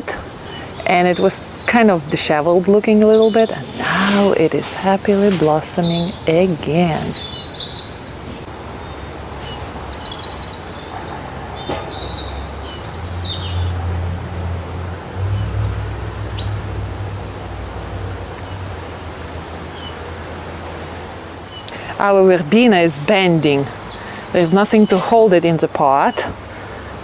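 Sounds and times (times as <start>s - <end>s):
insects trilling: 0.0s - 27.0s
low rumble: 13.2s - 19.1s.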